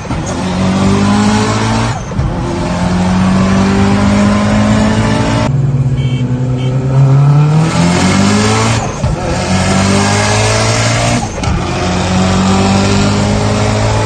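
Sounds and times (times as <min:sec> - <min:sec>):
car engine accelerating hard: 0:00.0 - 0:14.0.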